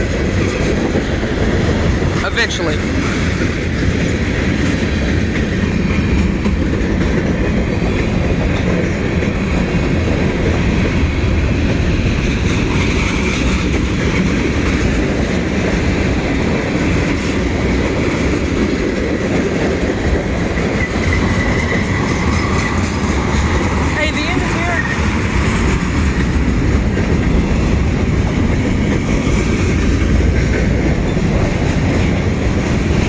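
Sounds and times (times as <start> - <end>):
freight train rumbling past: 0.0 - 33.0
wheels clacking over rail joints: 0.0 - 33.0.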